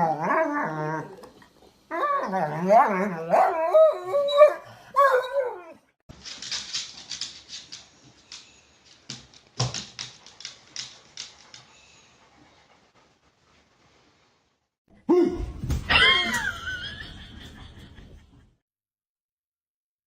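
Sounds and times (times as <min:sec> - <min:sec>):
thump: 0:15.4 - 0:16.0.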